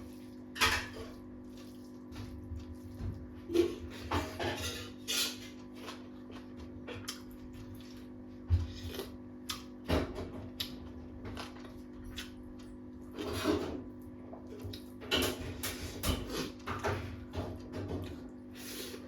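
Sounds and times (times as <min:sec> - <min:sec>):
chewing and mouth noises: 0:10.5 - 0:13.4.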